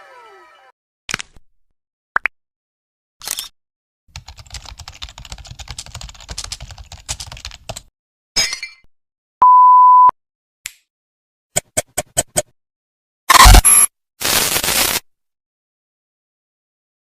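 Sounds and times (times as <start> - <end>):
rapid keyboard typing: 4.1 - 7.9
steady beep: 9.4 - 10.1, 13.3 - 13.9.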